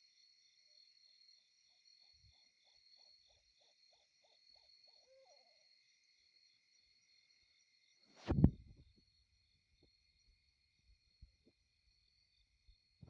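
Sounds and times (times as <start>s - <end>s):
insect chirring: 0.1s - 8.0s
distant animal call: 4.8s - 5.7s.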